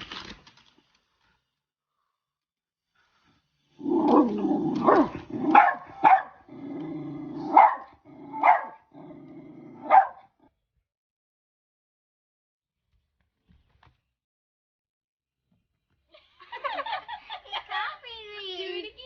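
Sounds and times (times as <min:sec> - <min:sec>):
dog growling: 0:03.8 - 0:10.4
dog barking: 0:04.1 - 0:06.5, 0:07.3 - 0:08.9, 0:09.8 - 0:10.4.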